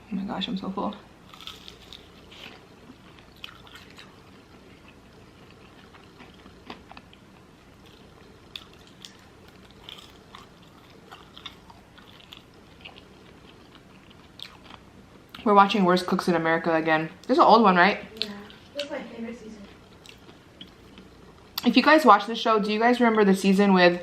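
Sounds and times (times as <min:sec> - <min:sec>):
person chewing food: 0:01.3 - 0:15.5, 0:19.6 - 0:21.6.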